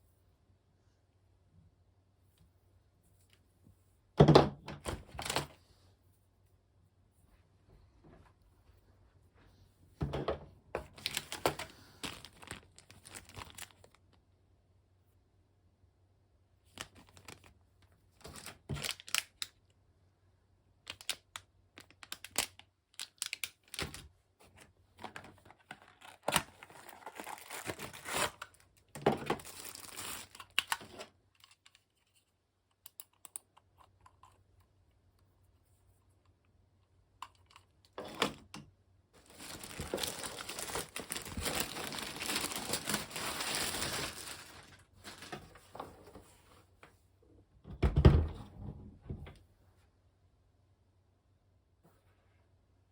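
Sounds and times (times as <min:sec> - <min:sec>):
packaging rustling and tearing: 0:10.9 - 0:14.0, 0:16.7 - 0:17.5, 0:18.2 - 0:19.5, 0:20.9 - 0:24.0, 0:25.0 - 0:31.7, 0:39.2 - 0:45.7.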